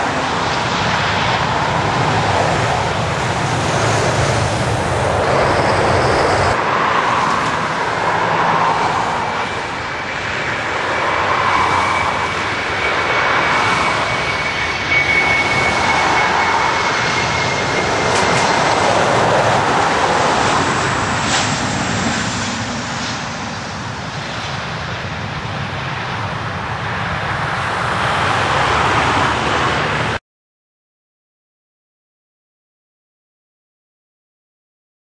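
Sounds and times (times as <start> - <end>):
airliner engines rushing: 0.0 - 30.2
thin high whine: 5.2 - 6.6, 9.0 - 23.8.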